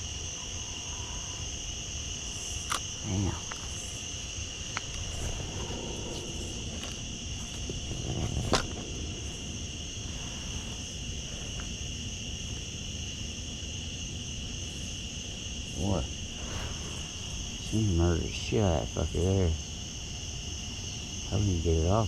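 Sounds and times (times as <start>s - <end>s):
insects trilling: 0.0s - 22.0s.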